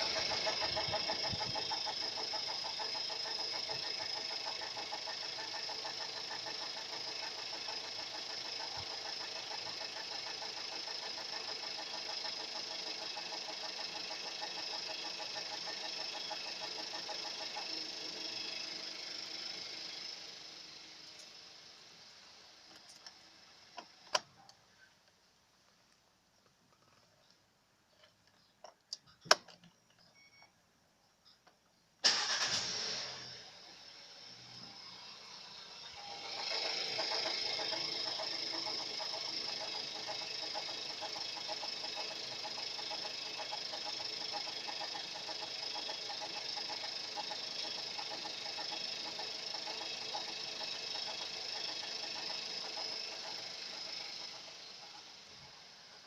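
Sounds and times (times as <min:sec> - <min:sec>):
engine knocking rhythmically: 0:00.0 - 0:24.0, 0:35.5 - 0:56.0.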